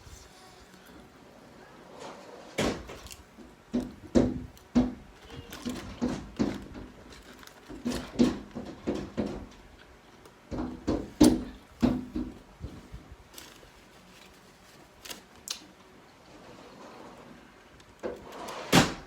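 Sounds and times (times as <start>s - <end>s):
children banging on a door: 3.7s - 7.1s, 7.7s - 9.6s, 10.5s - 12.4s.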